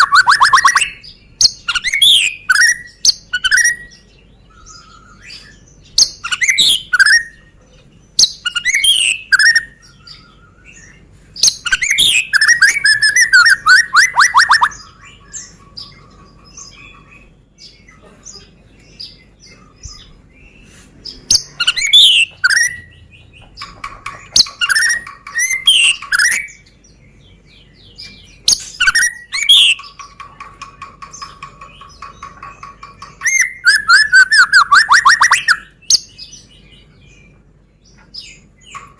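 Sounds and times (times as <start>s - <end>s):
bird singing whistled phrases: 0.0s - 3.9s, 4.5s - 7.4s, 8.2s - 15.4s, 21.6s - 22.9s, 24.4s - 26.6s, 28.6s - 29.8s, 33.2s - 36.2s
bird trills: 0.0s - 38.9s.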